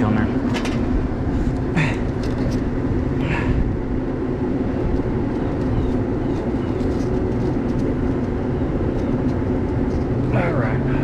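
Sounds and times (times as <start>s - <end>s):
low mechanical drone: 0.0s - 11.0s.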